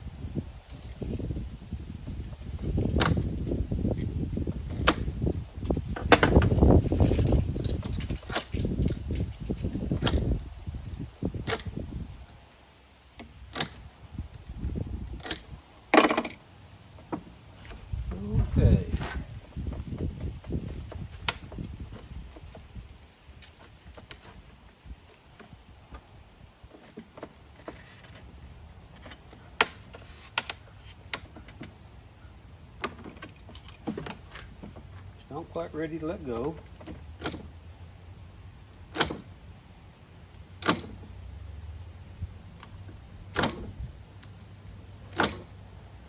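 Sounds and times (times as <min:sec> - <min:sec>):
low handling knocks: 0:04.7 - 0:06.8.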